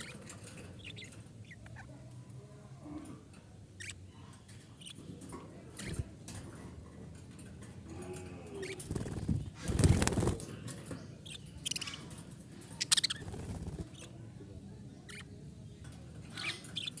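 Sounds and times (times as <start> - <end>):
parrots chirping: 0.0 - 2.0, 3.8 - 5.1, 11.2 - 12.1, 12.8 - 14.2, 15.0 - 15.4, 16.2 - 17.0
wing flapping: 8.6 - 10.5, 13.0 - 14.0.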